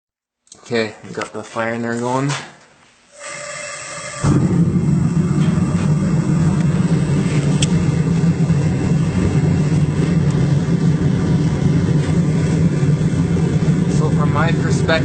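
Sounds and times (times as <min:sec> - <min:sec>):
gas forge burner rumble: 0:03.1 - 0:15.0.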